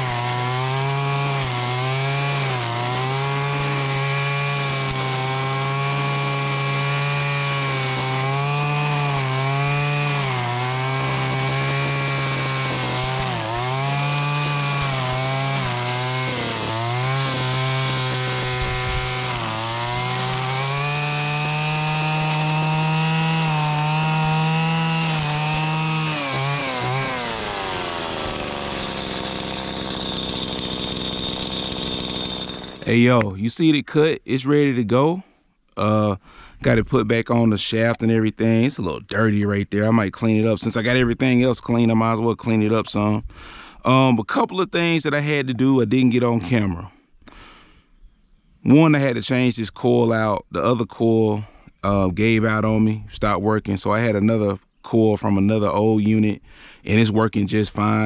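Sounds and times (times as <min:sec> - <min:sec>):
string trimmer running: 0:00.0 - 0:33.0.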